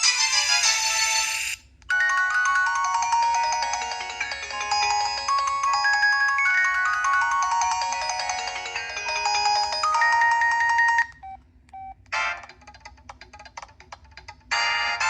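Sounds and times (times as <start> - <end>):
polyphonic phone ringtone: 1.9 - 11.4.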